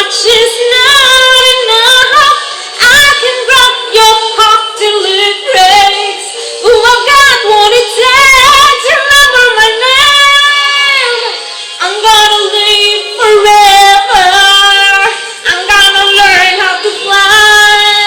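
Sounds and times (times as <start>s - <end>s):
woman singing pop song: 0.0s - 18.0s.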